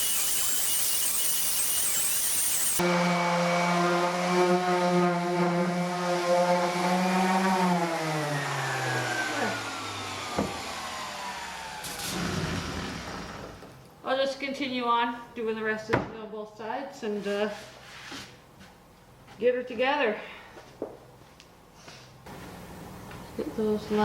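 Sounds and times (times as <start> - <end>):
electric power tool motor winding down: 0.0 - 4.2, 6.4 - 13.7.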